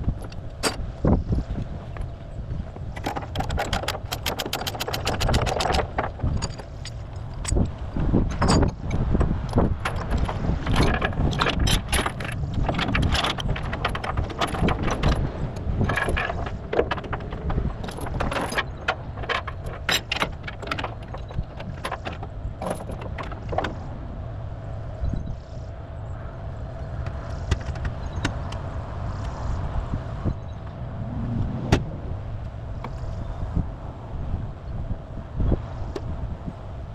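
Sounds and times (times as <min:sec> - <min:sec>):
metal chains rattling and clanking: 0:03.0 - 0:23.8.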